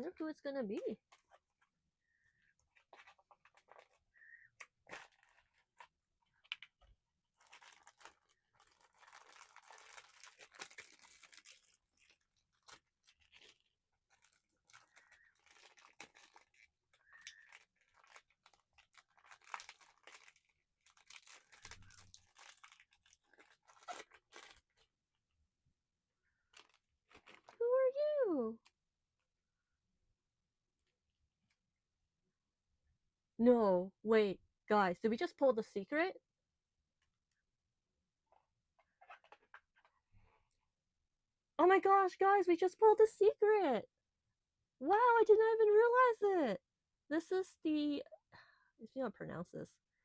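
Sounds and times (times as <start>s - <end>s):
plastic packaging crinkling: 0.8s - 25.0s, 26.4s - 27.7s.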